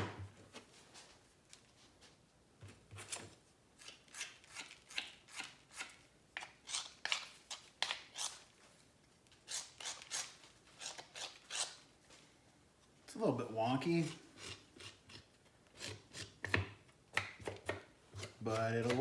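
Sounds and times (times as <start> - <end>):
hand tool scraping clay: 14.0 - 16.7, 17.4 - 19.0.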